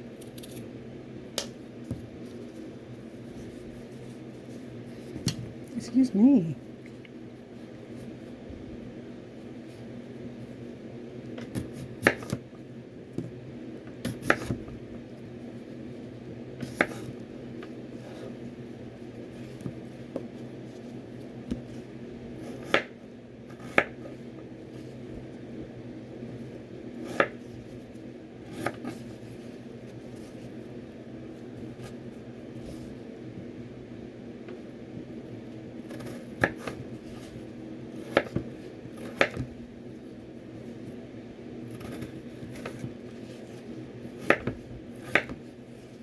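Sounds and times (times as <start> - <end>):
steady low hum: 0.0 - 46.0
knife chopping on cutting board: 22.6 - 22.9, 23.6 - 24.0, 38.0 - 39.5, 44.2 - 45.4.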